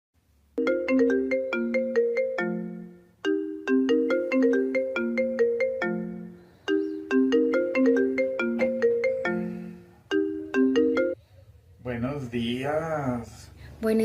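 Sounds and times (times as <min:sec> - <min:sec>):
marimba-like alarm melody: 0:00.6 - 0:11.2.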